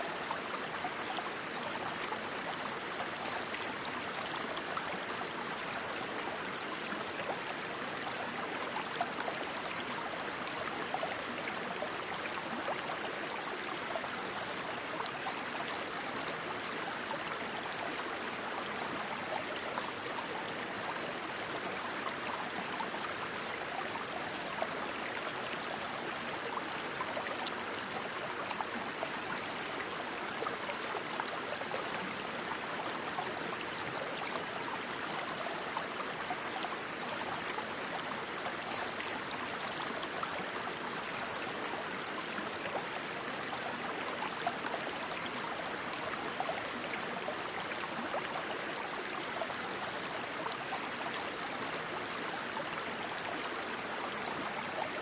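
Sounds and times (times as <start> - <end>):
rushing water flowing: 0.0 - 55.0.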